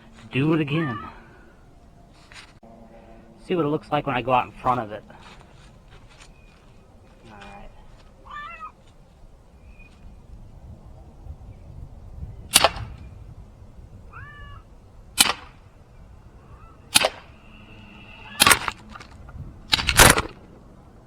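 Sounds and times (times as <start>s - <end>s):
cat meowing: 0.7s - 1.3s, 8.2s - 8.8s, 14.1s - 14.7s
bb pistol shots: 12.5s - 13.0s, 15.2s - 15.6s, 16.9s - 18.9s, 19.7s - 20.4s.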